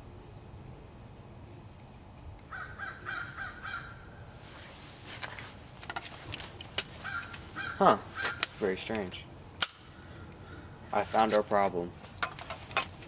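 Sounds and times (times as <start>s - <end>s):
bird calling: 2.5s - 4.2s, 6.8s - 8.8s.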